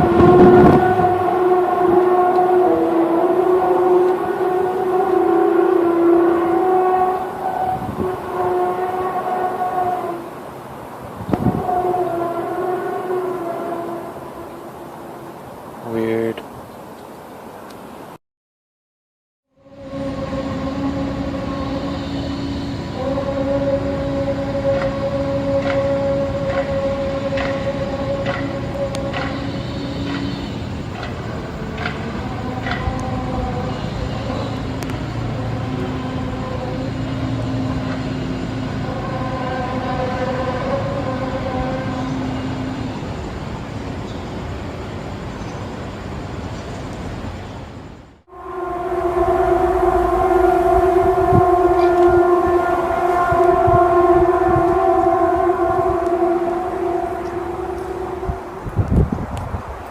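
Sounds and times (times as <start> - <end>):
drone of steady tones: 0.0 - 16.4, 19.5 - 59.9
rumbling haze: 19.6 - 59.9
low rumble: 48.2 - 59.8.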